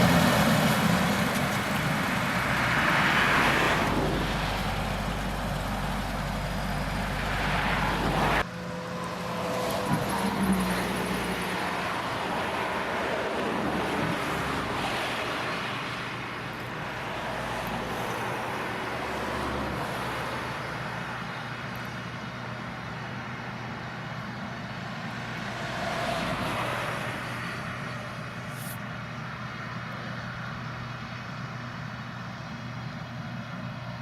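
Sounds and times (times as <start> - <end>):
broad rushing noise: 0.0 - 30.5
low engine hum: 0.0 - 34.0.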